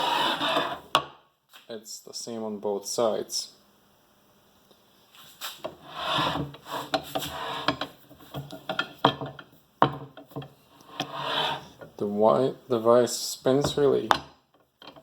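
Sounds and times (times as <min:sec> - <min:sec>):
bench vise scraping on swivel base: 0:00.0 - 0:01.0, 0:05.6 - 0:09.4, 0:10.3 - 0:11.9.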